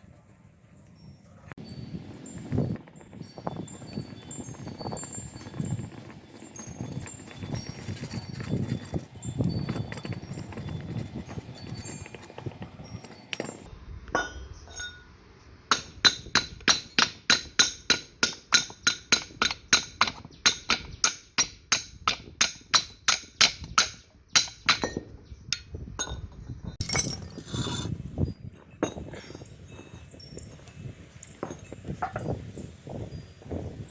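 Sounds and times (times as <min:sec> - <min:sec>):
metal vise parts clinking: 0:14.2 - 0:15.1, 0:22.8 - 0:27.9.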